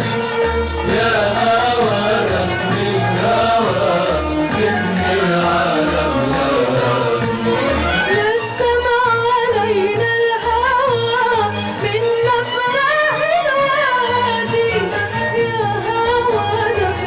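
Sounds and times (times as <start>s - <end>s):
person singing ornamented melody: 0.9s - 8.6s.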